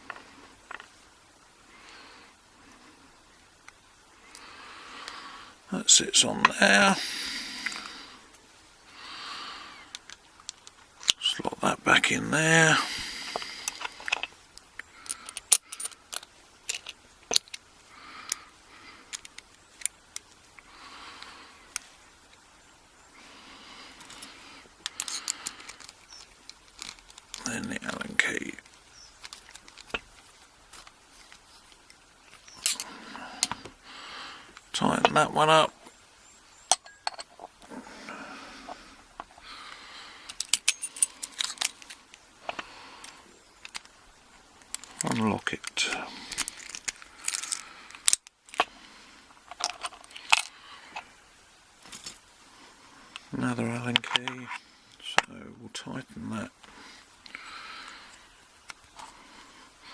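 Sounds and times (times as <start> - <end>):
metal parts scraping: 13.3 - 14.4, 15.0 - 17.6, 36.7 - 37.5, 40.3 - 43.9, 46.3 - 48.6.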